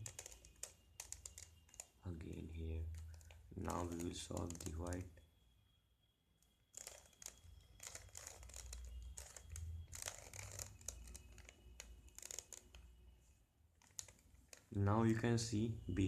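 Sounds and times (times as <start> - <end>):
puzzle cube clicking and rattling: 0.0 - 5.1, 6.7 - 12.8, 13.8 - 14.8.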